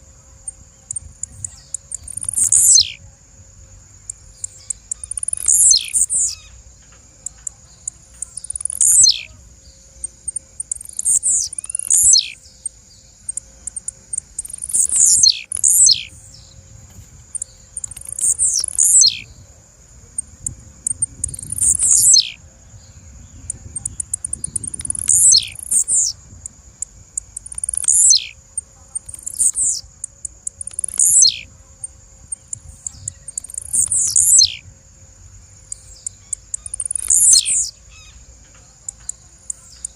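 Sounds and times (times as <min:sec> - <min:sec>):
bird calling: 0:00.0 - 0:03.1, 0:04.0 - 0:19.4, 0:20.1 - 0:22.4, 0:23.3 - 0:31.5, 0:32.3 - 0:34.7, 0:35.6 - 0:39.9.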